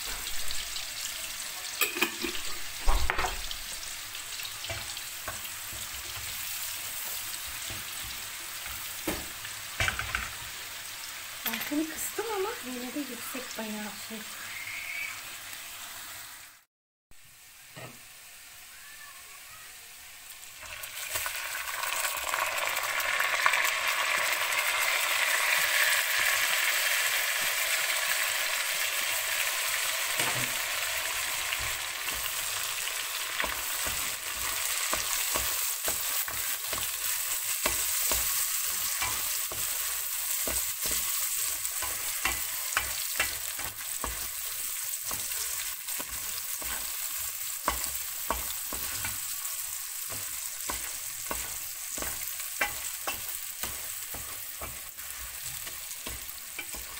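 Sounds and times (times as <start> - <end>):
meat sizzling in a pan: 0.0 - 56.9.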